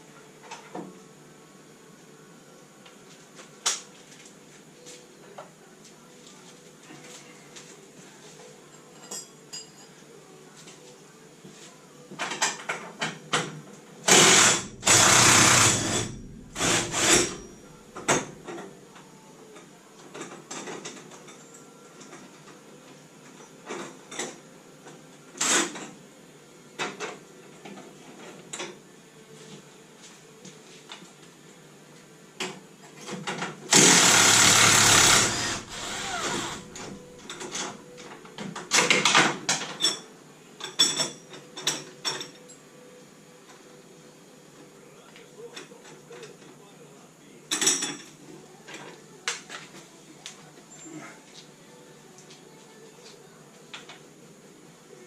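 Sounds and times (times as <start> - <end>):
power tool bursts: 14.1 - 17.4, 33.7 - 36.9.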